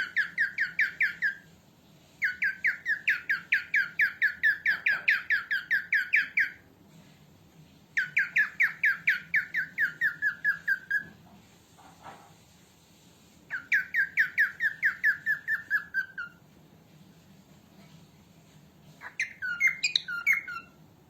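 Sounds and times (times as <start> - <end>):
cockatiel squawking: 0.0 - 1.4, 2.2 - 6.6, 8.0 - 11.1, 13.5 - 16.4, 19.0 - 20.8.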